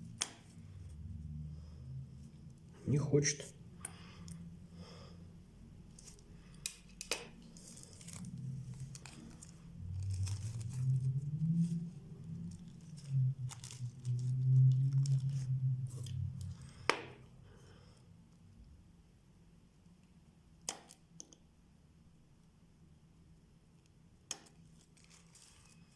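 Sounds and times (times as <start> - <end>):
low wavering hum: 0.0 - 18.2
small tools clicking and scraping: 5.9 - 10.9.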